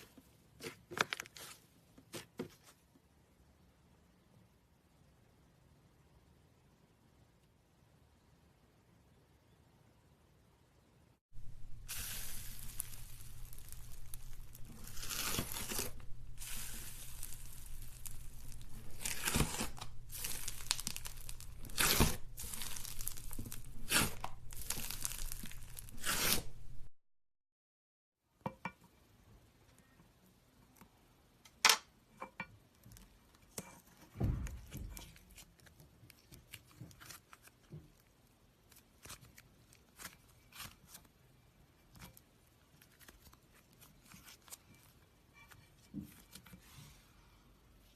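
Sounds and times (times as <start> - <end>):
slime crackling and popping: 11.6 - 26.6.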